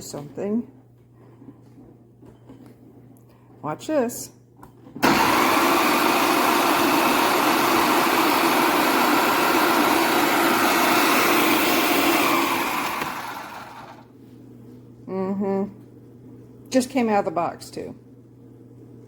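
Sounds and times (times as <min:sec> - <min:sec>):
food chopper motor whining: 0:05.0 - 0:14.1.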